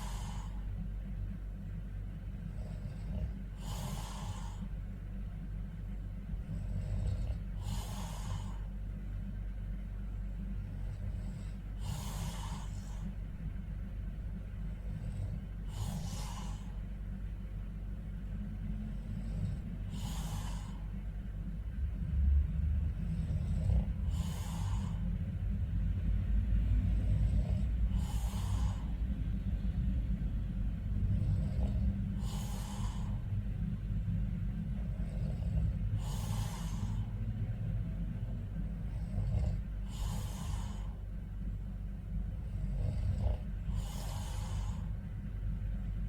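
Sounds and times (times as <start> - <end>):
man snoring: 0.0 - 0.6, 2.4 - 4.8, 6.3 - 8.7, 10.6 - 13.2, 14.7 - 16.8, 18.7 - 21.0, 22.1 - 25.2, 26.7 - 29.1, 30.7 - 33.4, 34.7 - 41.1, 42.3 - 45.0
man breathing heavily: 0.0 - 1.1, 2.3 - 5.0, 6.2 - 9.1, 10.4 - 13.9, 14.5 - 21.7, 22.8 - 45.5
steady low hum: 0.0 - 46.0
low rumble: 4.2 - 46.0.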